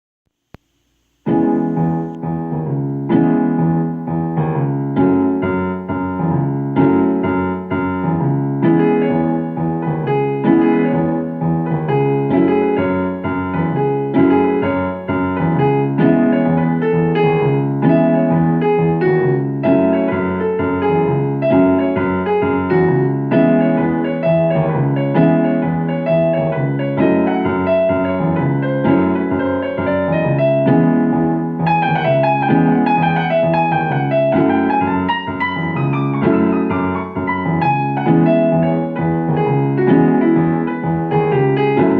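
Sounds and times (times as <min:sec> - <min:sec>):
solo piano piece: 0:00.6 - 0:41.9.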